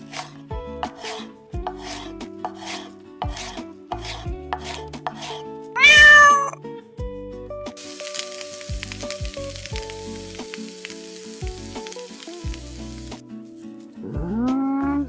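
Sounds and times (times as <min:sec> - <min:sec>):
background music with steady beat: 0:00.0 - 0:05.8, 0:06.6 - 0:07.9
cat meowing: 0:05.8 - 0:06.6.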